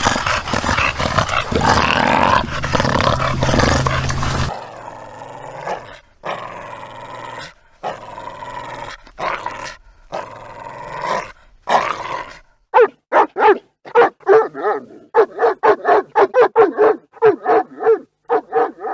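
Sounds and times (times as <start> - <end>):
dog barking: 0.0 - 4.5, 12.7 - 18.9
dog growling: 0.0 - 12.3.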